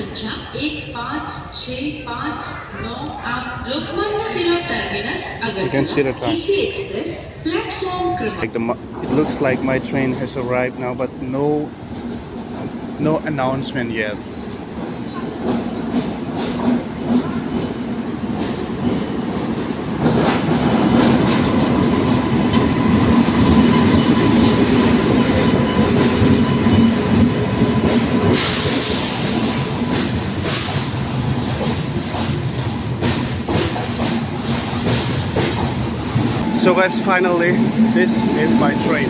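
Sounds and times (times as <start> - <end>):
train wheels clattering on rails: 14.3 - 39.0.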